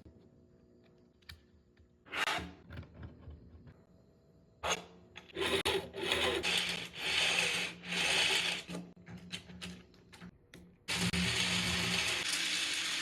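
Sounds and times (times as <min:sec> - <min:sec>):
toy train motor whirring: 0:05.4 - 0:08.8, 0:10.9 - 0:13.0.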